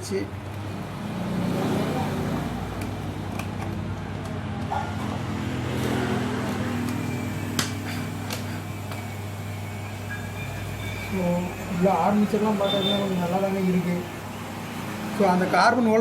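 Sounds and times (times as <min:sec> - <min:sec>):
low mechanical hum: 0:02.5 - 0:15.8
clicks and taps of small parts: 0:02.8 - 0:04.7.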